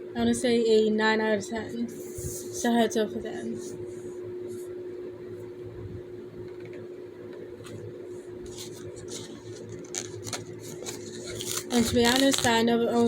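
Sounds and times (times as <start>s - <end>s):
steady low hum: 0.0s - 13.0s
faint clicks and rustles: 8.5s - 13.0s.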